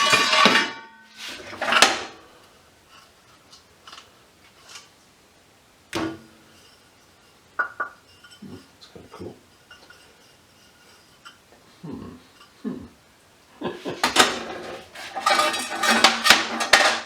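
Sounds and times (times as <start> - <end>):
metal parts clanking: 0.0 - 2.2, 14.0 - 17.0.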